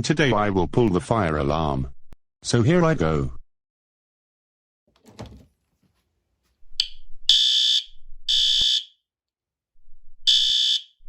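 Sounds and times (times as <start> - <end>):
fire alarm beeping: 6.8 - 9.0, 10.3 - 11.0.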